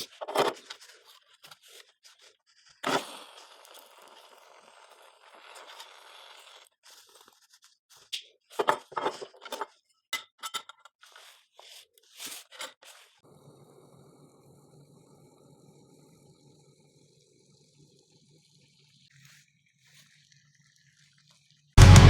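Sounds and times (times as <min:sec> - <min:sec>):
scraping and crunching handling noises: 0:00.0 - 0:03.1, 0:07.0 - 0:09.8.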